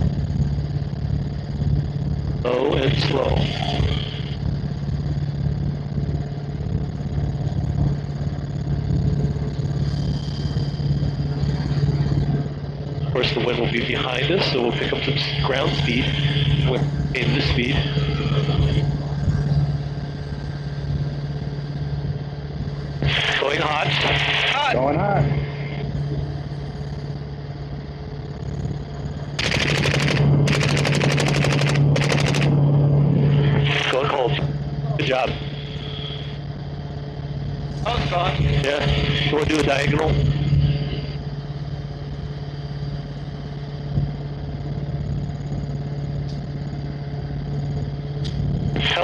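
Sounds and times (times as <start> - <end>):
helicopter rotor and engine: 0.0 - 49.0
automatic gunfire bursts: 29.4 - 32.5.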